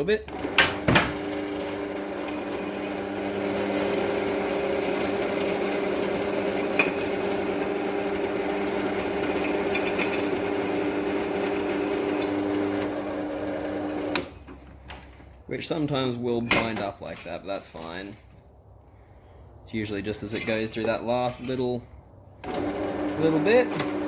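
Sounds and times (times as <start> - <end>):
electric drill boring into steel: 0.3 - 14.4, 22.4 - 24.0.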